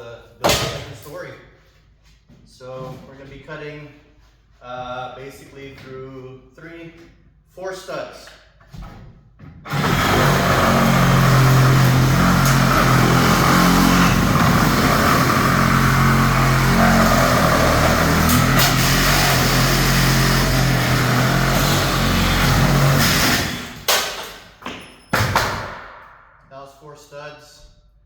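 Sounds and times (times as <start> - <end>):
reciprocating saw cutting wood: 9.7 - 23.9.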